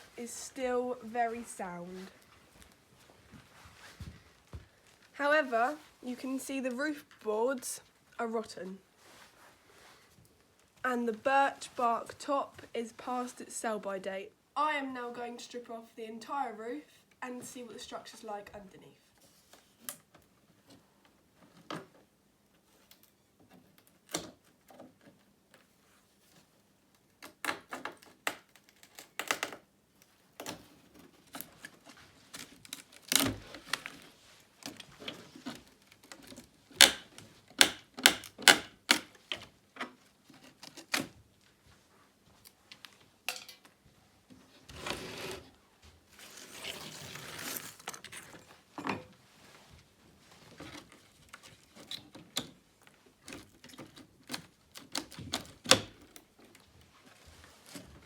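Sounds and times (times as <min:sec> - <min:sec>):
wood scraping and tearing: 0:31.0 - 0:37.3, 0:44.7 - 0:45.5, 0:46.1 - 0:48.5.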